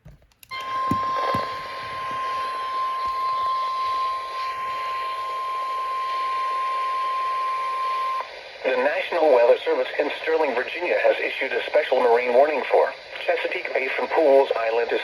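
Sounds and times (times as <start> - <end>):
high-pitched warning tone: 0.5 - 8.2
radio static hiss: 6.9 - 15.0.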